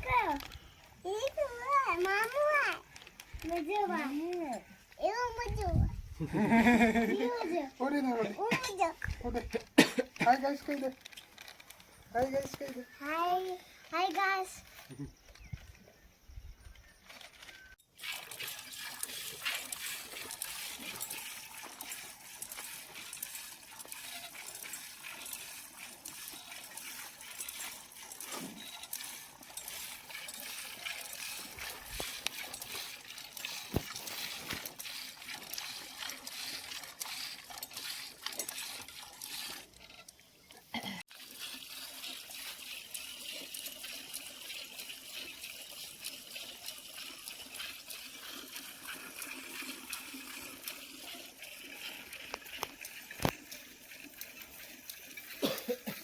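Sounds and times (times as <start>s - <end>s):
running water splashing: 17.9s - 56.0s.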